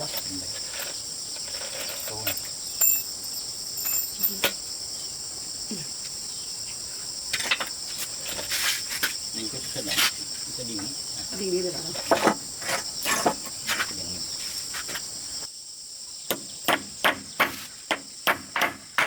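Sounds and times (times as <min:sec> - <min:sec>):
insect chorus chirring: 0:00.0 - 0:19.0
scattered knocks: 0:16.3 - 0:19.0.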